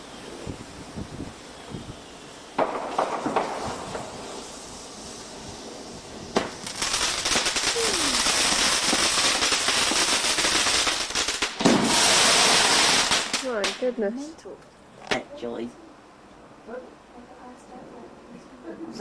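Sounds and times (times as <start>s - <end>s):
fireworks cracking: 0.0s - 14.0s
burning firework crackling hiss: 0.0s - 14.1s
firework bang: 2.5s - 13.9s.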